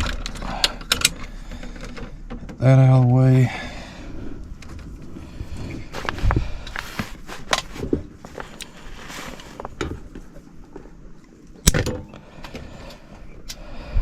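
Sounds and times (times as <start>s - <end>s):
hand tools and wire clicking: 0.0s - 3.2s.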